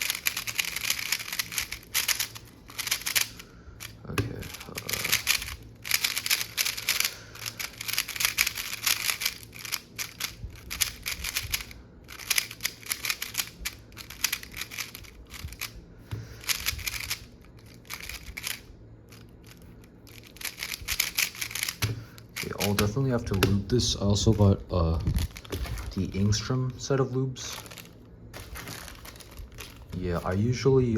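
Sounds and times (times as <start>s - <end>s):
puzzle cube plastic clicking: 0.0s - 15.8s, 16.4s - 24.4s.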